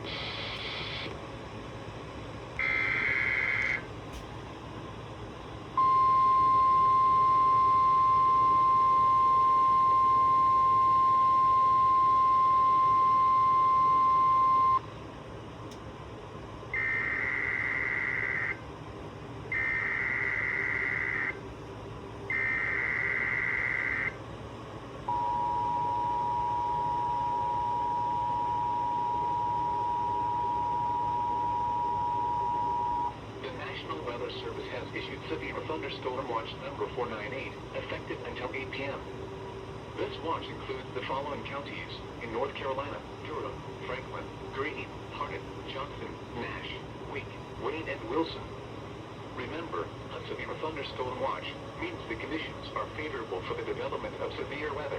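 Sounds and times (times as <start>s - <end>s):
steady single-tone alarm: 0.0s - 1.1s, 2.6s - 3.9s, 5.8s - 14.9s, 16.7s - 18.6s, 19.5s - 21.4s, 22.3s - 24.2s, 25.1s - 33.2s
two-tone attention signal: 5.8s - 14.8s, 25.1s - 33.2s.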